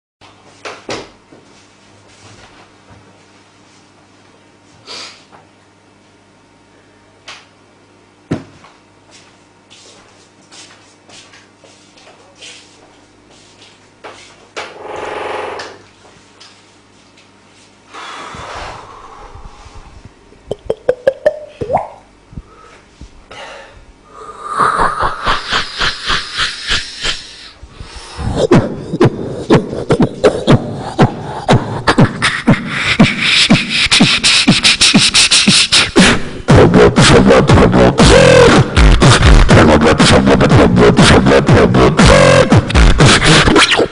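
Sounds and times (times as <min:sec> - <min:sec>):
mouth pops: 0:20.5 - 0:22.0
rhythmic chugging breath pulses: 0:22.4 - 0:43.8
mouth hissing burst: 0:24.2 - 0:28.4.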